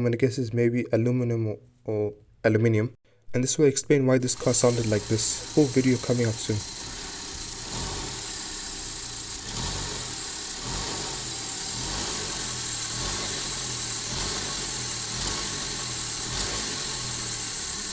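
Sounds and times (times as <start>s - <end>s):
car engine idling with knocking: 6.7s - 17.9s.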